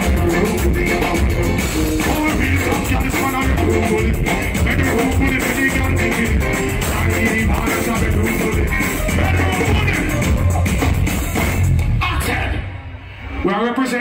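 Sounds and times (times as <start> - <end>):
heavy bass line: 0.0 - 12.9
live band music: 0.0 - 13.4.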